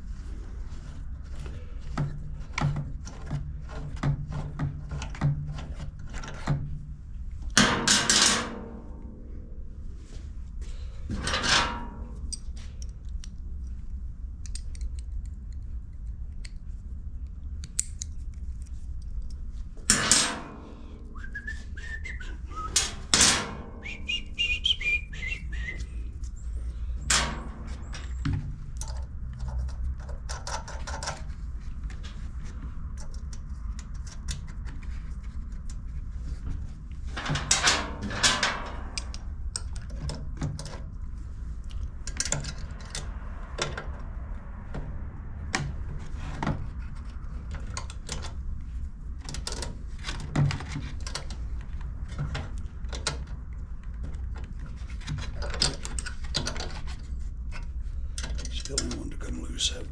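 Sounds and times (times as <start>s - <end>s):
metal clanks: 7.6s - 9.2s, 19.8s - 20.9s, 22.6s - 24.2s, 27.0s - 28.9s
hand tools clicking on metal: 17.6s - 20.4s
whistle-like squeak: 21.2s - 22.8s, 23.8s - 26.0s.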